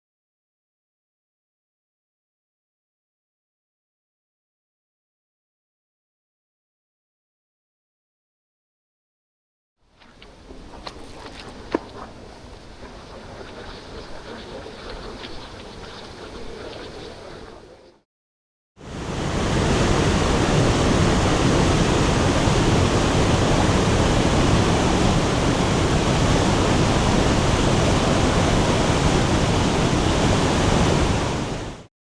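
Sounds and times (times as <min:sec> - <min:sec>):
rushing water: 0:09.9 - 0:18.0, 0:18.8 - 0:31.9.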